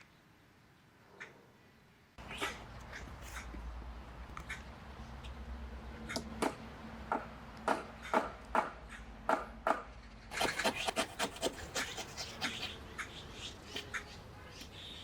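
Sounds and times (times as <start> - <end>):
hand tool rubbing wood: 10.3 - 12.6.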